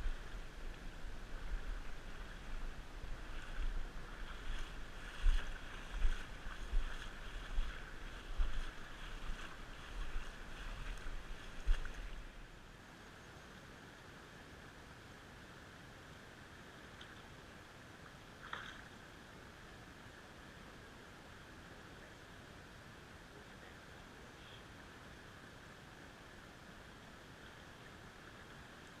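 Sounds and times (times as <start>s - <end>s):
wind buffeting microphone: 0.0s - 12.4s
steady outdoor hiss: 0.0s - 29.0s.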